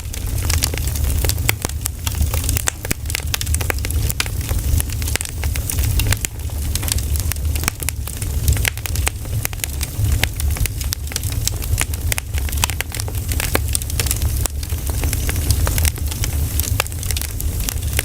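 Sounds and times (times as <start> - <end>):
campfire crackling and popping: 0.0 - 18.0
low steady rumble: 0.0 - 18.0.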